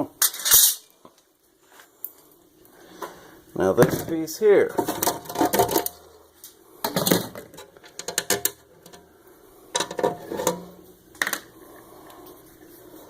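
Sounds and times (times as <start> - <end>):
metal parts clinking and rattling: 0.2 - 0.9.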